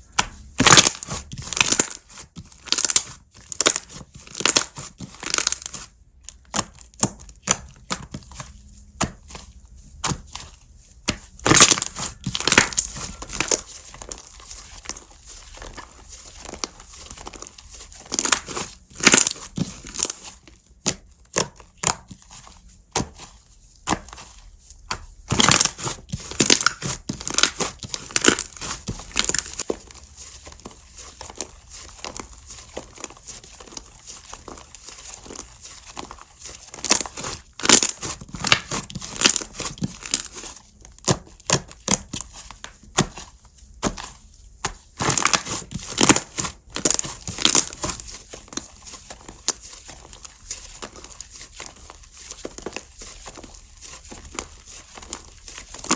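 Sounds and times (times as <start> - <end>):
slime crackling pops: 0.2 - 2.0, 2.6 - 8.4, 11.1 - 15.0, 18.1 - 20.2, 24.9 - 29.7.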